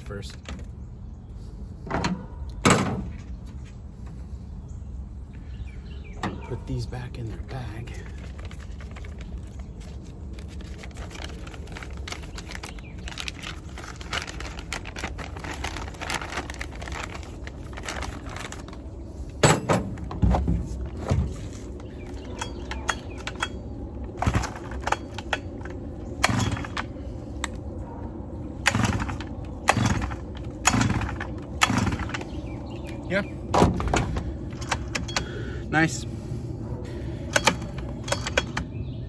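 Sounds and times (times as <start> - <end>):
rustling and handling: 7.6 - 26.0.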